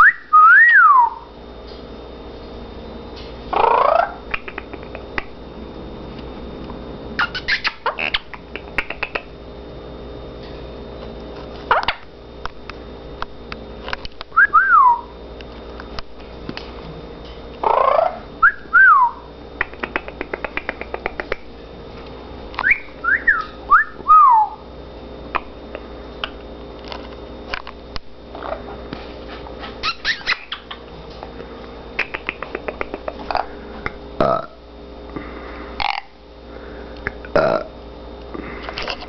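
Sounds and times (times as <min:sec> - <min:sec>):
parrot whistling: 0:00.0 - 0:01.3, 0:07.2 - 0:08.2, 0:14.4 - 0:15.1, 0:17.6 - 0:19.3, 0:22.6 - 0:24.6, 0:29.8 - 0:30.8
parrot harsh call: 0:03.5 - 0:04.2, 0:17.6 - 0:18.2.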